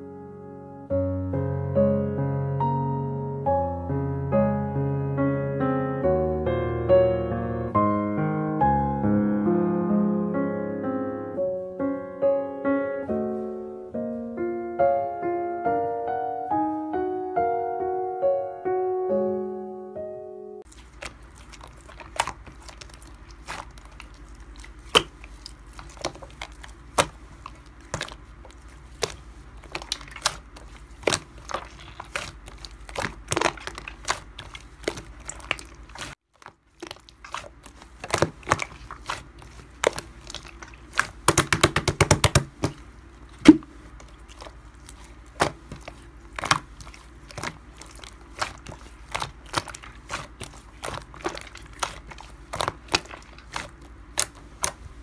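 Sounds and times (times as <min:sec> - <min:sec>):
low steady hum: 0:20.6 - 0:55.0
slime popping and crackling: 0:20.7 - 0:55.0.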